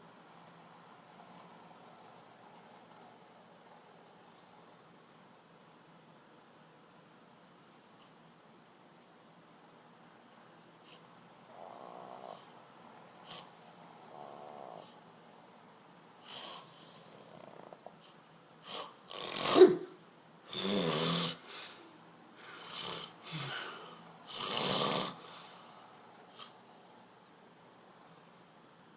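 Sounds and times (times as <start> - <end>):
person snoring loudly: 18.7 - 19.9, 20.5 - 21.6, 22.5 - 25.5.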